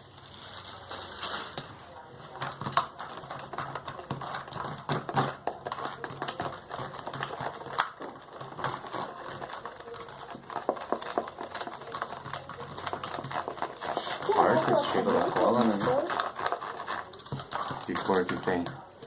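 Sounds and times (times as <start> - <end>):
plastic containers clicking and crinkling: 0.0 - 19.0.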